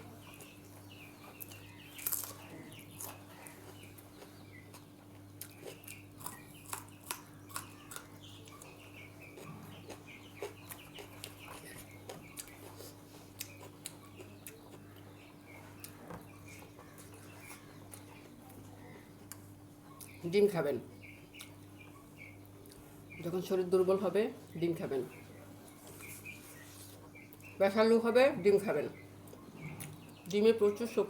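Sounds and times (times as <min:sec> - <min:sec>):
person eating with clicks and smacks: 0:00.2 - 0:20.2, 0:21.3 - 0:21.8, 0:22.4 - 0:22.9, 0:29.2 - 0:30.3.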